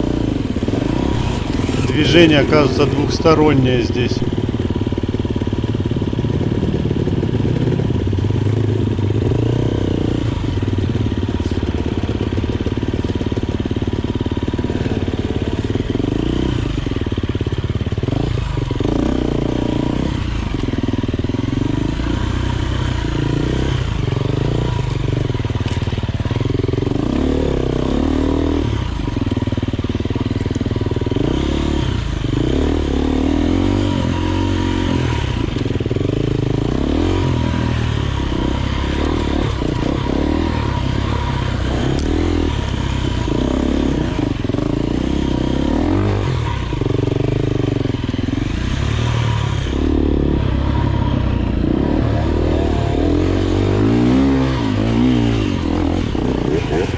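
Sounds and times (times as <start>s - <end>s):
motorcycle engine revving: 1.1s - 2.5s, 30.1s - 56.9s.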